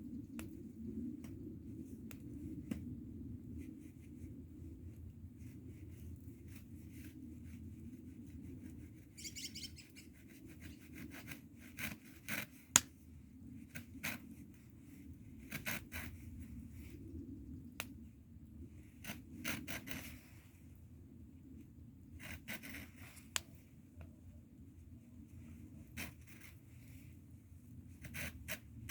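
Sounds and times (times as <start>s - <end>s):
wood fire crackling and popping: 12.7s - 13.0s.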